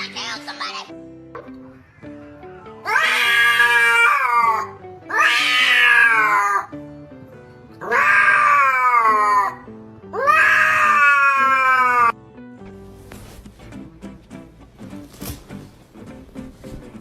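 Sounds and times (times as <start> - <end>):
background music: 0.0 - 17.0
cat yowling: 2.8 - 6.7, 7.8 - 9.6, 10.2 - 12.2.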